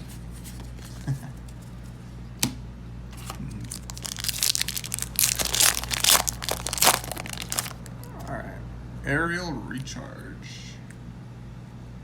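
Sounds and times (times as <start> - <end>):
foil wrapper click: 3.2 - 8.2
foil wrapper crinkling and tearing: 3.2 - 8.3.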